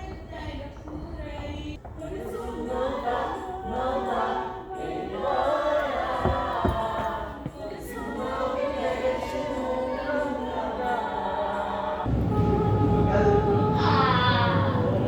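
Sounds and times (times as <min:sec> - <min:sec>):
voices singing in chorus: 0:00.0 - 0:15.0
dull thumps: 0:06.2 - 0:07.8.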